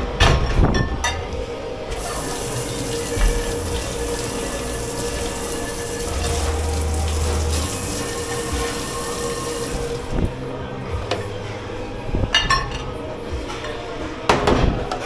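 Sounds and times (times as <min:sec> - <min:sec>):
steady hum: 0:01.6 - 0:12.3
tap water running into sink: 0:01.9 - 0:10.4.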